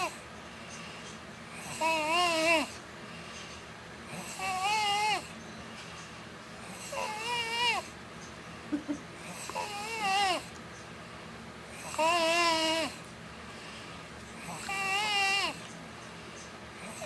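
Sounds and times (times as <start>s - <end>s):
child snoring high-pitched: 1.6s - 2.8s, 4.1s - 5.3s, 6.7s - 8.0s, 9.2s - 10.5s, 11.8s - 13.0s, 14.4s - 15.6s, 16.8s - 17.0s.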